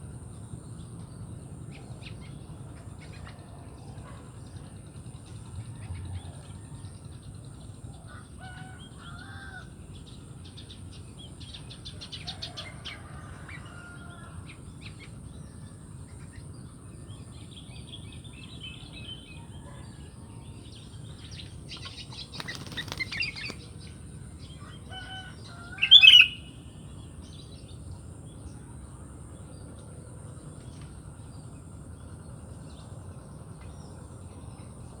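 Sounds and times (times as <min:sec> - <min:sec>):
bulbuls chirping: 0:21.8 - 0:23.8, 0:25.8 - 0:26.5.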